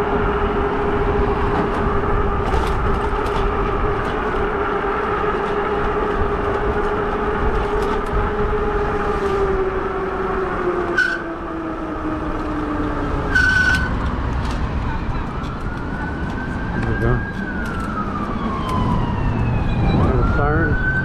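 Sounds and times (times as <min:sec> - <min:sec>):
e-bike motor whine: 0:00.0 - 0:18.2
wind rushing on microphone: 0:00.0 - 0:21.0
short high squeals: 0:10.9 - 0:11.3, 0:13.3 - 0:14.0.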